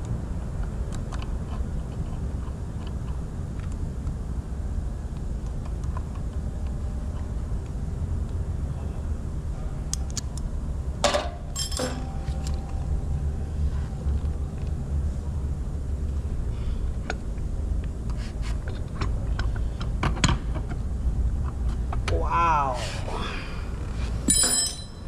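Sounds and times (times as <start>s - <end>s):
metal tools clinking and knocking: 11.1s - 12.6s, 24.3s - 25.0s
low rumble: 12.0s - 18.0s.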